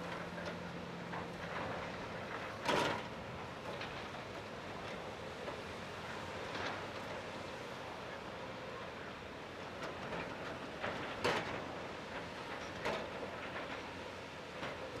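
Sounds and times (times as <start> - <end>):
excavator running: 0.0 - 8.0.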